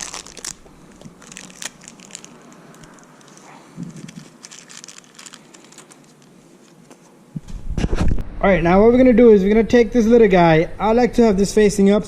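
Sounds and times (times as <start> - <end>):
plastic bag crinkling: 0.0 - 7.1.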